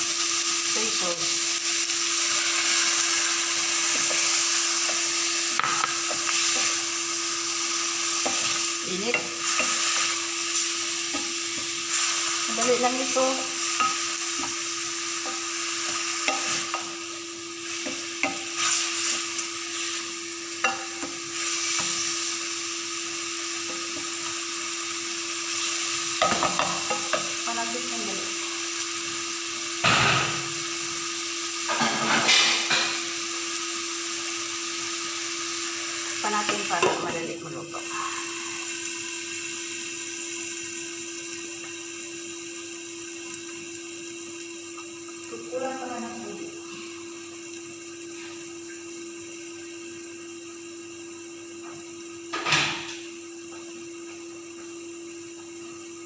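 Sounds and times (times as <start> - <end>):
chicken sizzling in a pan: 0.0 - 56.0
steady hum: 0.7 - 29.2
utensil tapping a pan: 5.5 - 6.7, 26.2 - 27.3.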